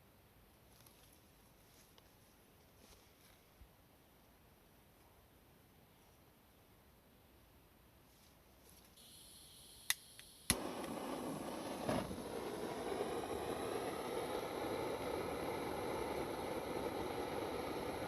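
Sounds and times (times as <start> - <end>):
gas hiss: 9.0 - 18.0
igniter clicks: 9.8 - 14.6
flame catching pop: 9.8 - 18.0
torch flame rushing: 10.5 - 18.0.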